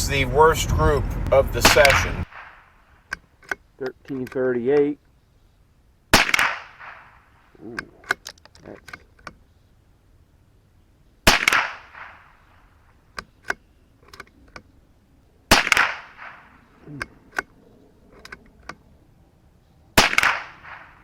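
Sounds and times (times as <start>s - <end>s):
rifle shots with echo: 1.6s - 3.1s, 6.1s - 7.5s, 11.2s - 12.6s, 15.5s - 16.8s, 20.0s - 21.0s
small clicks: 7.7s - 9.5s, 13.1s - 14.7s, 15.7s - 18.8s.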